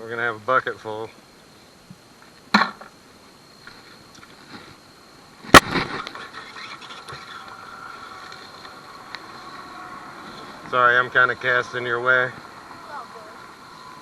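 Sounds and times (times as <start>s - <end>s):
metal scraping: 5.6s - 14.0s.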